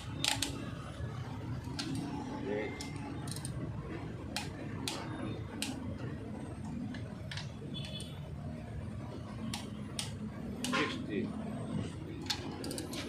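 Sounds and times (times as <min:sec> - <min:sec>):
torque wrench metal clicks: 0:02.8 - 0:03.6, 0:12.2 - 0:13.0.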